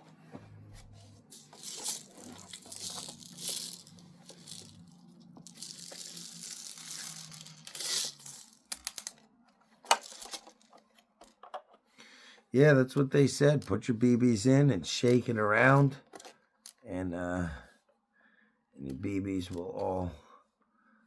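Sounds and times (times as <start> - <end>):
steel bbs rattling and pouring: 1.3 - 9.2, 10.0 - 10.7.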